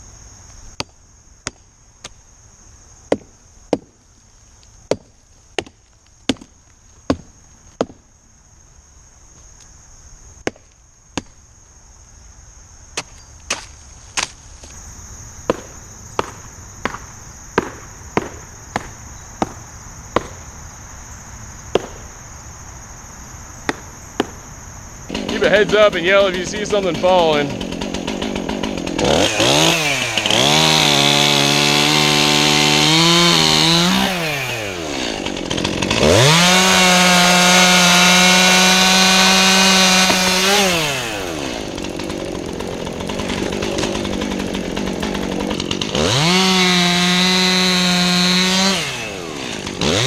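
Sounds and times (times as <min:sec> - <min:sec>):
hatchet chopping wood: 0:00.8 - 0:02.2, 0:03.1 - 0:04.0, 0:04.9 - 0:08.0, 0:10.4 - 0:11.4, 0:13.0 - 0:14.8, 0:15.4 - 0:20.5, 0:21.7 - 0:22.1, 0:23.6 - 0:24.4, 0:25.1 - 0:50.0.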